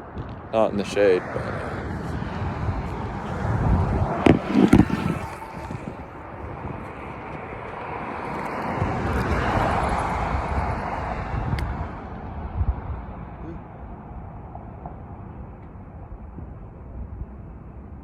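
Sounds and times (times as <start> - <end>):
traffic noise: 0.0 - 18.0
wind on microphone: 0.0 - 18.0
vehicle passing: 0.4 - 12.4.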